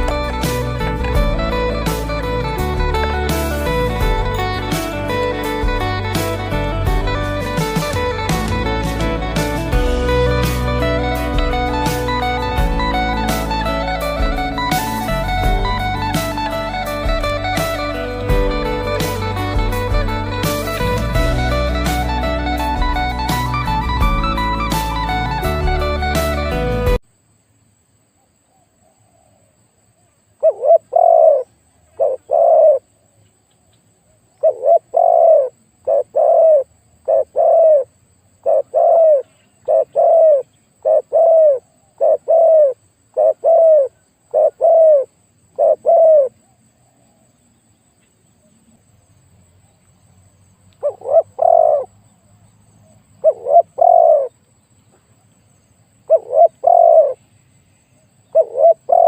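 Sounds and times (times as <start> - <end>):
dove cooing: 0.0 - 6.2, 10.8 - 22.1, 30.4 - 32.8, 34.4 - 47.2, 50.8 - 51.9, 53.2 - 54.3, 56.1 - 57.2, 58.3 - 59.0.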